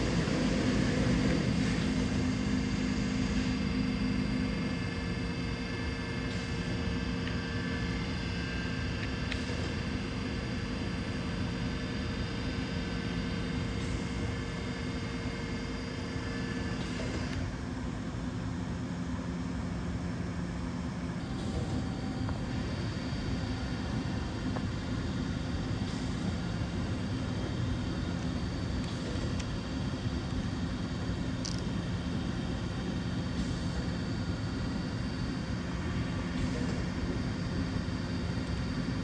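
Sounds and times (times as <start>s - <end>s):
cnc machine cutting: 0.0s - 17.5s.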